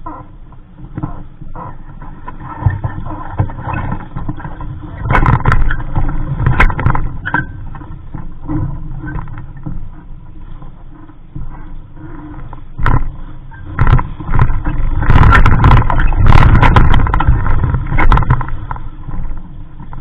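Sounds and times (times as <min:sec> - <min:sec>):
water splashing against hull: 0:00.0 - 0:20.0
wind rumbling on microphone: 0:00.0 - 0:20.0.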